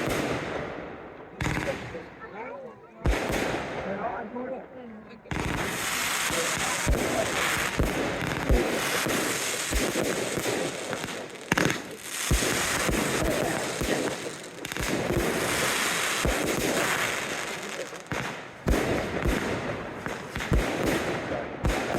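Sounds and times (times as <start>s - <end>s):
fireworks crackling hiss: 0.0s - 0.5s, 5.3s - 21.9s
low booms of shells bursting: 3.0s - 4.1s, 5.3s - 21.9s.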